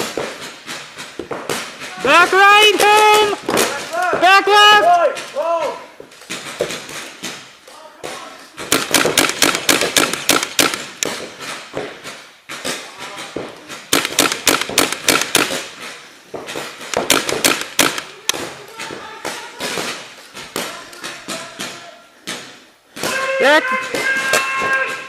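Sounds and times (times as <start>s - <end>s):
paintball markers firing: 8.0s - 25.0s.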